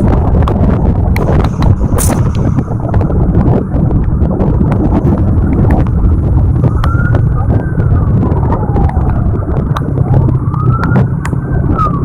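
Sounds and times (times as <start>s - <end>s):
heavy vehicle engine rumble: 0.0s - 12.0s
wind: 0.0s - 12.0s
siren wailing: 5.2s - 12.0s.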